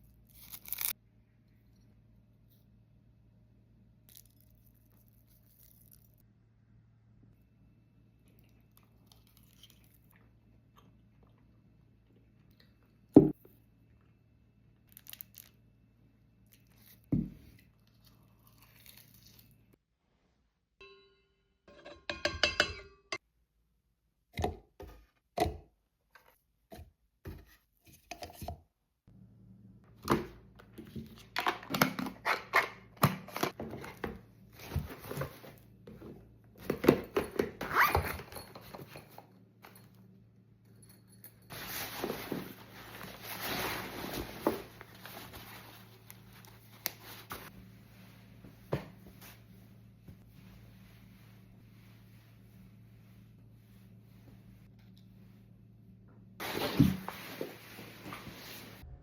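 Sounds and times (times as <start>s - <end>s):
steady low hum: 39.2s - 59.0s
scraping and rustling: 41.5s - 47.5s.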